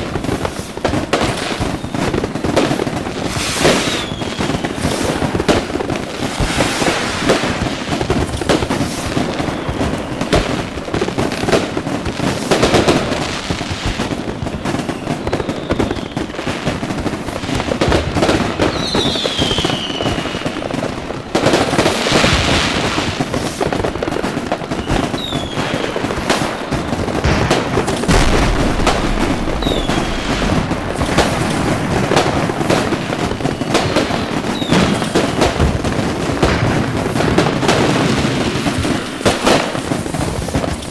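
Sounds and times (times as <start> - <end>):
fireworks crackling and banging: 0.0 - 40.9
falling firework whistle: 3.1 - 10.6, 14.7 - 16.6, 18.6 - 20.6, 27.9 - 35.3.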